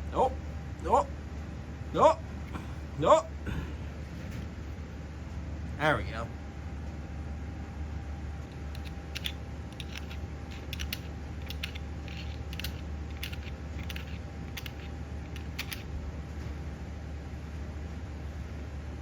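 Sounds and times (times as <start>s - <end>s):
steady low hum: 0.0s - 19.0s
metallic tool clicks: 8.5s - 15.9s.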